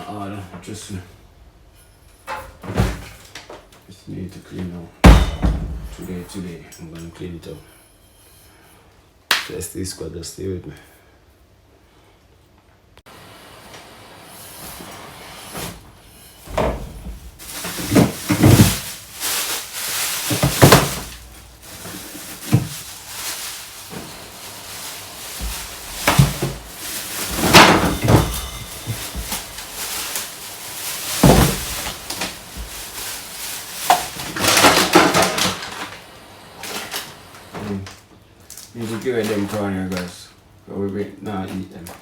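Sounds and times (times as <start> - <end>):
drawers and shelves knocking: 5.0 - 6.0, 16.5 - 23.2, 25.2 - 35.7
containers clattering: 15.5 - 38.0, 38.7 - 40.2.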